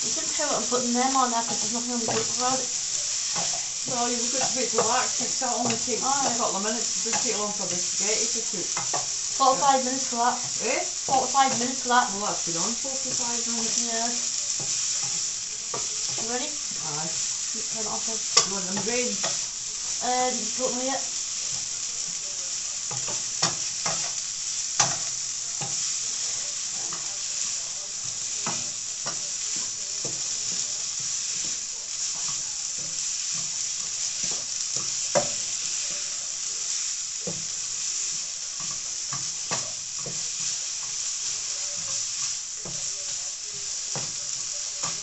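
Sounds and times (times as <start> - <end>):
food sizzling in a pan: 0.0 - 45.0.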